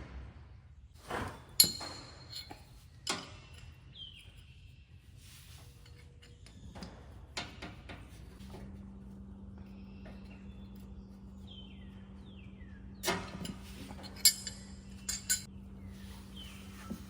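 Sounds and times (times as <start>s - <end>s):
steady low hum: 0.0s - 17.0s
metal tools handling: 1.6s - 3.2s, 13.0s - 15.5s
sharp metallic clink: 14.2s - 15.5s.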